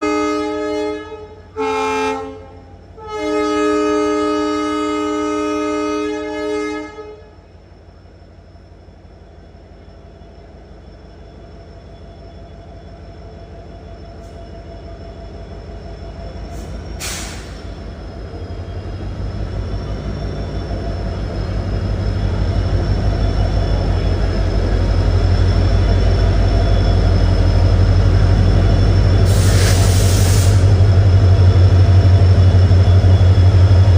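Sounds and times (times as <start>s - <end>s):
locomotive horn blasts: 0.0s - 7.4s.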